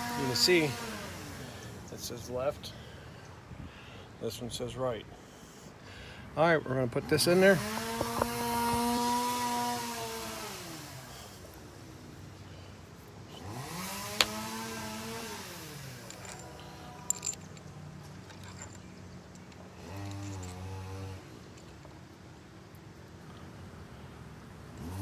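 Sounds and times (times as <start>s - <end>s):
cordless power tool motor: 0.0s - 1.4s, 7.6s - 11.1s, 13.4s - 17.3s.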